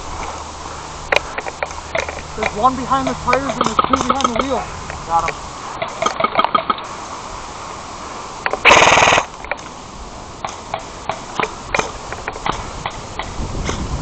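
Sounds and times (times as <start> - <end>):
airsoft gun burst: 8.6 - 9.3.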